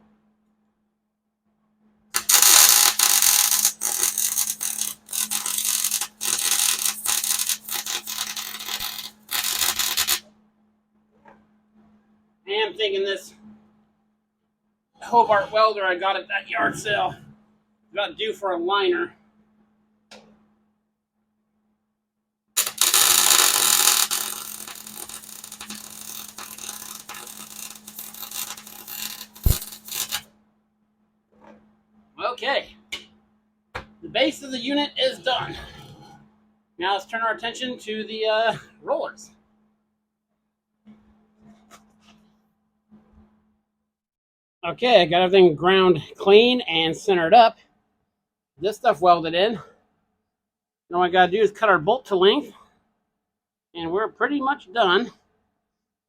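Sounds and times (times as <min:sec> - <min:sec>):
welder arc crackling: 0:02.2 - 0:10.2, 0:22.6 - 0:30.3.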